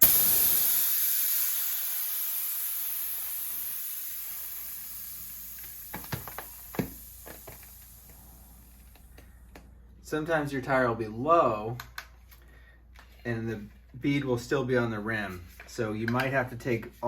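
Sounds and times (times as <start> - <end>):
air hissing from bicycle tire: 0.0 - 9.1.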